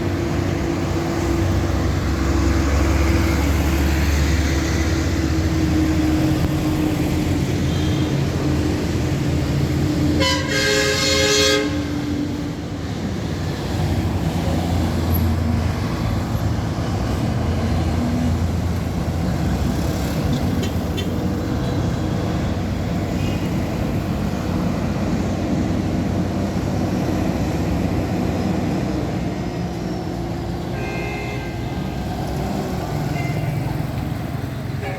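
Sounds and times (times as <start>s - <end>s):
street traffic: 0.0s - 34.9s
vehicle horn honking: 10.2s - 11.9s, 30.8s - 31.7s.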